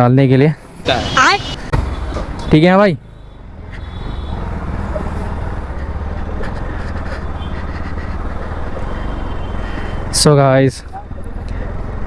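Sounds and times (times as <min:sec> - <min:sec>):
wind and road noise: 0:00.0 - 0:12.0
motorcycle engine running: 0:01.6 - 0:10.2.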